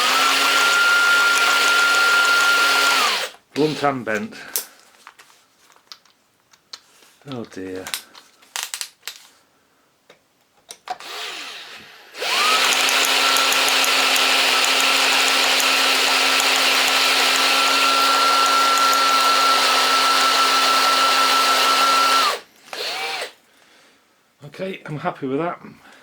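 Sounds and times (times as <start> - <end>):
electric drill boring metal: 0.0 - 3.9, 11.0 - 23.4.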